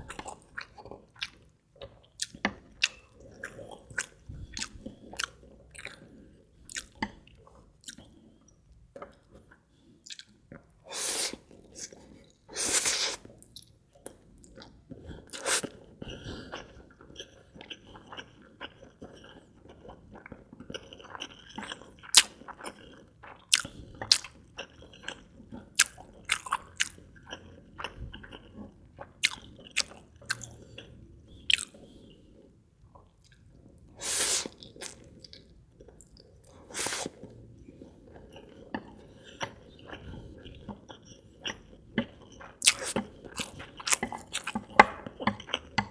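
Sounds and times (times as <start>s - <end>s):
wet chewing and smacking: 0.0s - 6.1s, 6.7s - 10.7s, 13.0s - 32.0s, 32.9s - 45.9s
noodle slurping: 10.9s - 13.2s, 34.0s - 35.0s, 36.6s - 37.2s, 42.6s - 44.7s.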